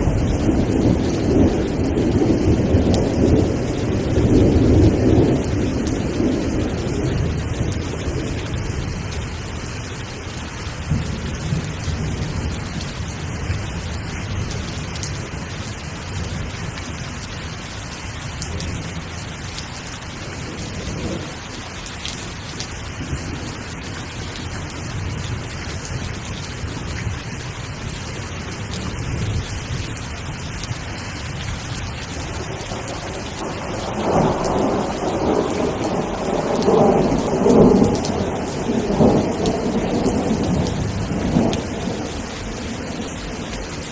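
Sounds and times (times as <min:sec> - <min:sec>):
rolling thunder: 0:00.0 - 0:09.7, 0:10.8 - 0:15.5, 0:20.2 - 0:21.5, 0:31.6 - 0:43.9
steady rain falling: 0:00.0 - 0:43.9.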